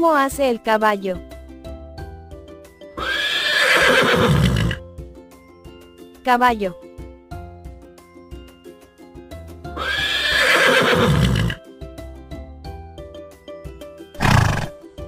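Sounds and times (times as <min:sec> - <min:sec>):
soft children's music: 0:00.0 - 0:03.6, 0:04.7 - 0:10.3, 0:11.1 - 0:15.0
horse whinnying: 0:03.0 - 0:04.8, 0:09.8 - 0:11.6, 0:14.2 - 0:14.8.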